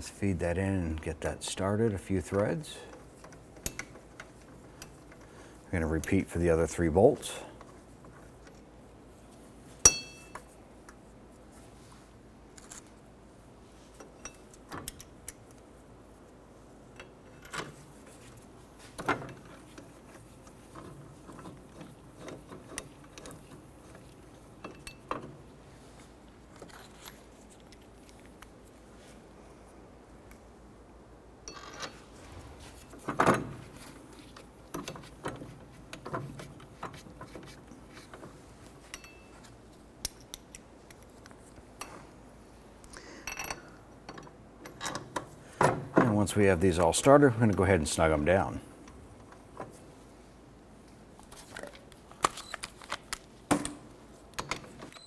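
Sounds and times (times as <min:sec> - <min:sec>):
metal bolts clicking and clinking: 0:31.5 - 0:32.0.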